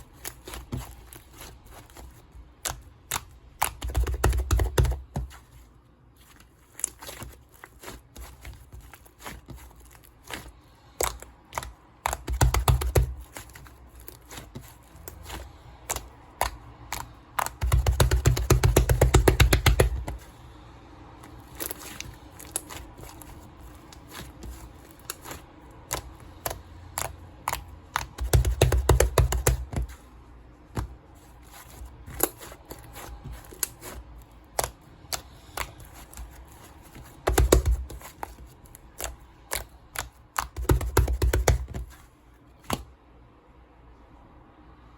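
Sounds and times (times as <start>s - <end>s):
clicks and taps: 2.5s - 5.4s, 11.0s - 20.2s, 23.8s - 30.0s, 31.7s - 42.0s.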